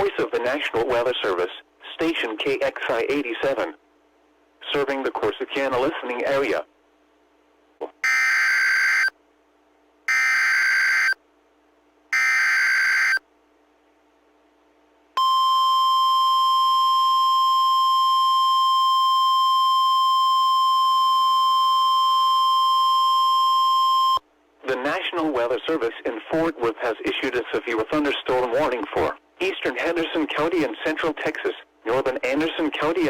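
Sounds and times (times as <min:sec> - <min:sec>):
steady warning alarm tone: 0:08.0 - 0:09.1, 0:10.1 - 0:11.2, 0:12.1 - 0:13.2.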